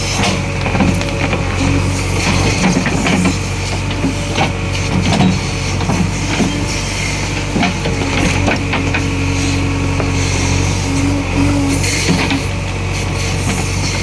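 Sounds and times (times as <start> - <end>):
diesel engine running: 0.0 - 14.0
knocks and clanks: 0.2 - 9.2.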